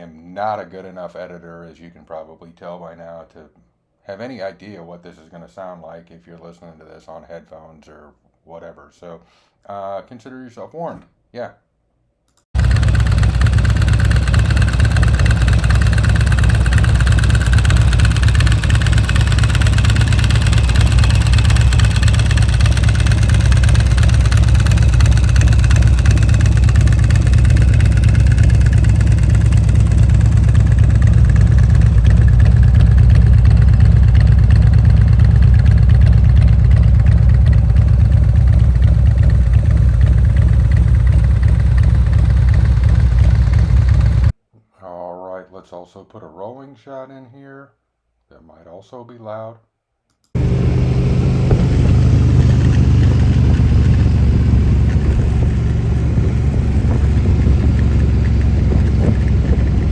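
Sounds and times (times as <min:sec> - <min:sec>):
dry clutch spinning: 0:12.6 - 0:44.3, 0:50.4 - 0:59.9
motorcycle engine running loud: 0:12.6 - 0:44.3, 0:50.4 - 0:59.9.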